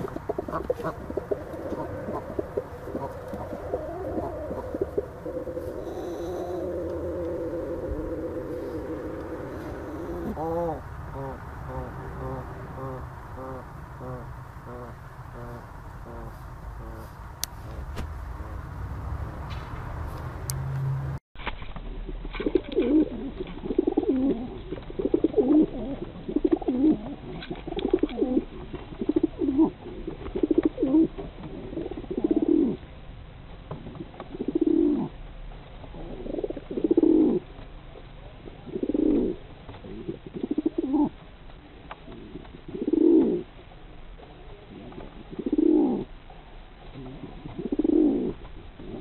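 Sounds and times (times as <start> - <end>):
pigeons cooing: 0.0 - 17.2, 22.5 - 32.8, 33.8 - 35.2, 35.9 - 37.5, 38.4 - 41.2, 42.0 - 43.6, 44.5 - 46.1, 46.9 - 49.0
other noise: 0.0 - 49.0.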